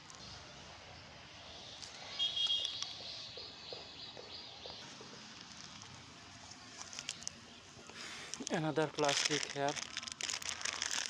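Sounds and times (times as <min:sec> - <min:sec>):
bird call: 0:02.1 - 0:04.8.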